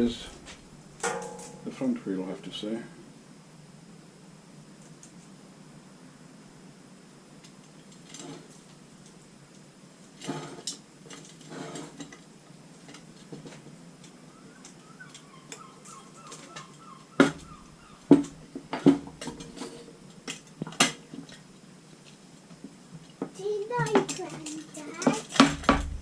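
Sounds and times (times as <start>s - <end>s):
metal spokes clinking: 1.0s - 1.7s.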